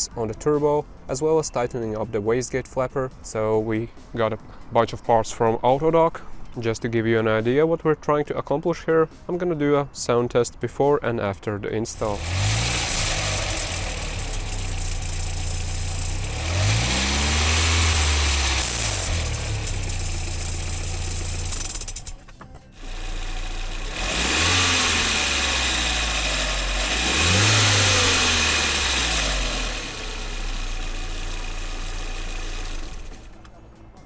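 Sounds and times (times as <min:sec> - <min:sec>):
car engine idling and revving: 0:11.9 - 0:33.8.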